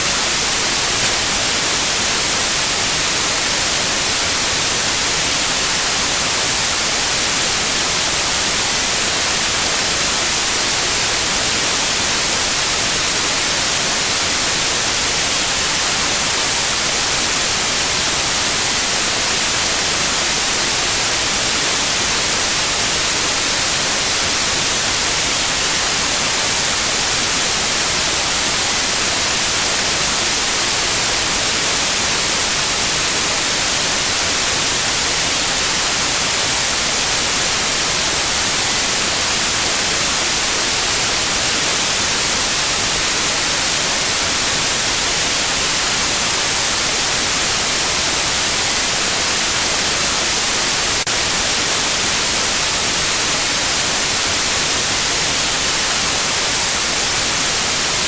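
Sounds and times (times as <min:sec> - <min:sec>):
high-pitched sine tone: 0:00.0 - 0:58.0
white noise hiss: 0:00.0 - 0:58.0.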